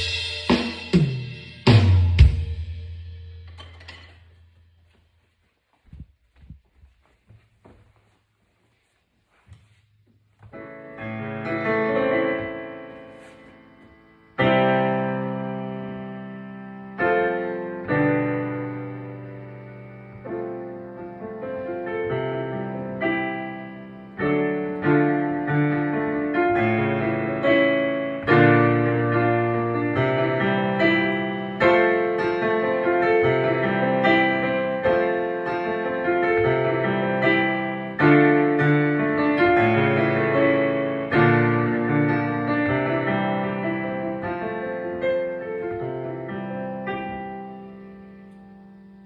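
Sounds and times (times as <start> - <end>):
solo piano chords: 10.3 - 49.0.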